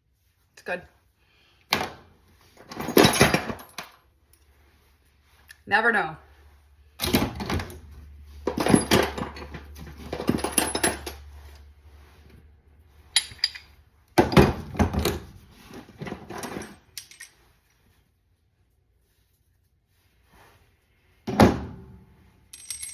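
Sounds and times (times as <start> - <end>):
metal hand tools clinking: 13.1 - 13.8, 16.4 - 17.4.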